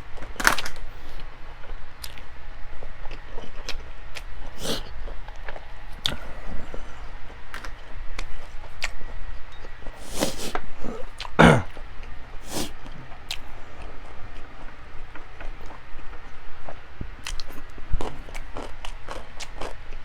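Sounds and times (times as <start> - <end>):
person chewing with mouth clicks: 10.0 - 11.9, 17.2 - 20.0.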